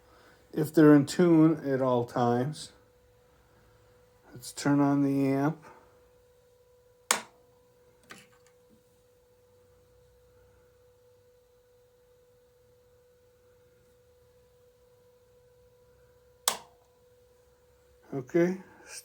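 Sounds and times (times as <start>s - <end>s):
faint high amplifier hum: 0.0s - 19.0s
amplifier switch click: 7.1s - 7.4s, 16.5s - 16.9s
small click: 16.5s - 16.9s.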